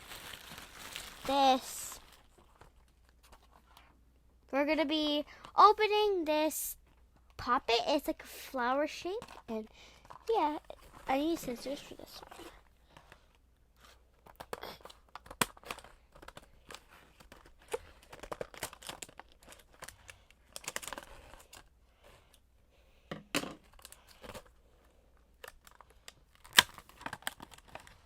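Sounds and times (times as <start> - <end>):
plastic packaging crinkling: 0.0 - 3.2, 14.2 - 21.7, 25.4 - 28.0.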